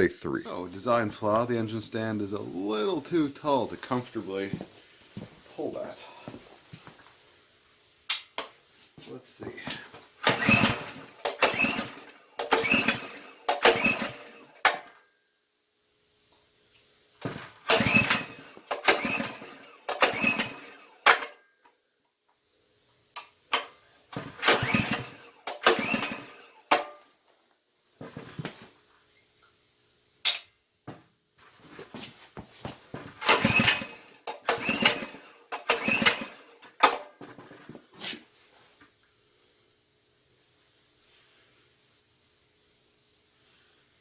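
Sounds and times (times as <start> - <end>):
recoil rope pulls cranking engine: 10.2 - 14.4, 17.3 - 21.0, 24.2 - 26.6, 33.2 - 36.6.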